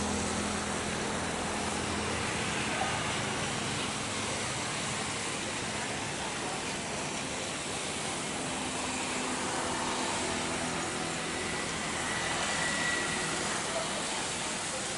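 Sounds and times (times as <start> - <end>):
jet engines roaring: 0.0 - 14.9
faint high whine: 7.2 - 14.9.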